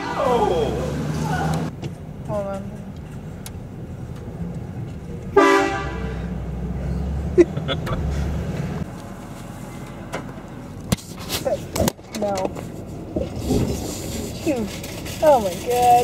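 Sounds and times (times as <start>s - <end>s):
truck engine rumbling: 0.0s - 16.0s
train horn blast: 5.3s - 6.2s.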